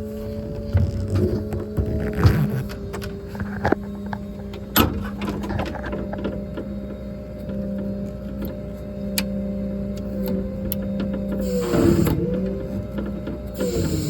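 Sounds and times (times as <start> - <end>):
hydraulic system hum: 0.0 - 14.0.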